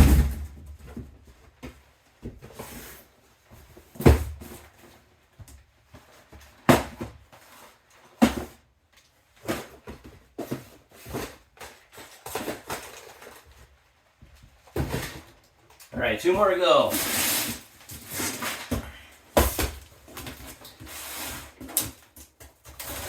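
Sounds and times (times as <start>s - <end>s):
cardboard boxes knocking and thudding: 0.0s - 8.7s, 9.3s - 15.4s, 16.3s - 23.0s.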